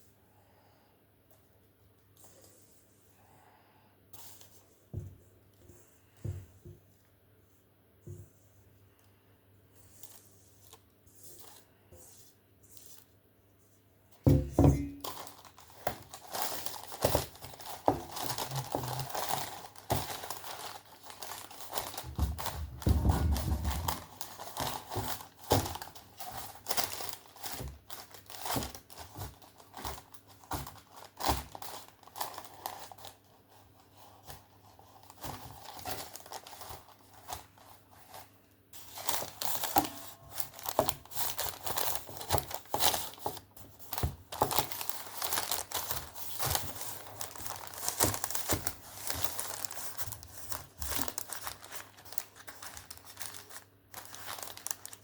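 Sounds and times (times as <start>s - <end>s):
hands crinkling and rustling: 4.2s - 55.0s
heavy thud: 22.1s - 24.1s.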